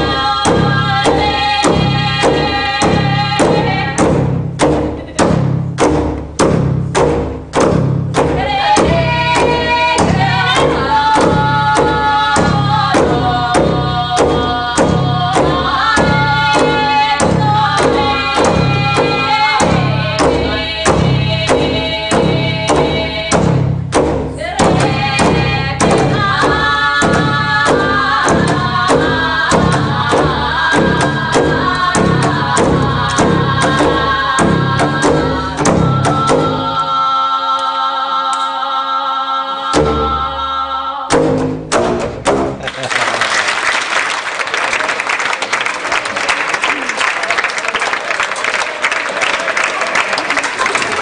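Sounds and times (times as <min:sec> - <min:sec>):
percussive beat: 0:00.0 - 0:36.8, 0:41.1 - 0:42.8.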